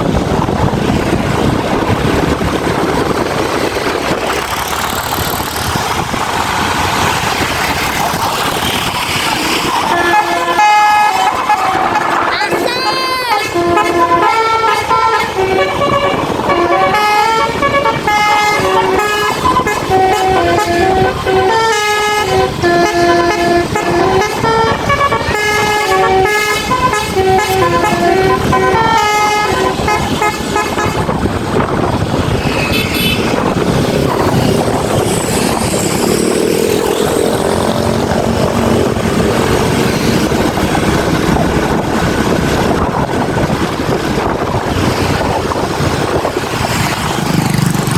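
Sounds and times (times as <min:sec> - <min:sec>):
vehicle and road noise: 0:00.0 - 0:47.9
bus musical horn melody: 0:09.8 - 0:31.5.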